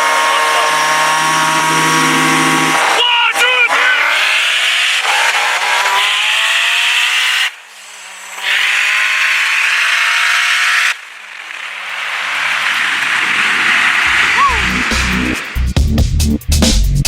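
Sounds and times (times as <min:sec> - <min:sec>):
car engine accelerating hard: 0:00.0 - 0:15.8
loud rushing hiss: 0:11.2 - 0:15.8.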